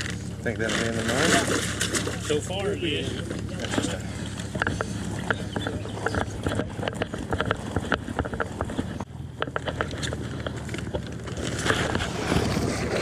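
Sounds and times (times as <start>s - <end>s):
low motor hum: 0.0s - 13.0s
sharp clicks and knocks: 3.2s - 12.1s.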